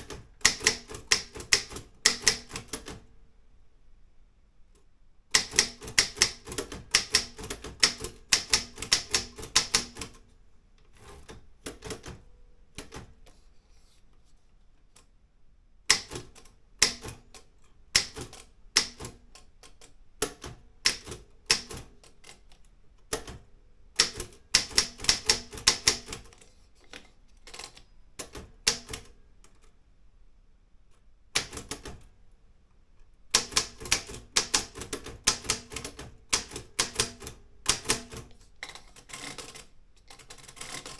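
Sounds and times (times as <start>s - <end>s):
typewriter keys clacking: 5.4s - 10.2s, 24.0s - 26.4s, 33.3s - 40.9s.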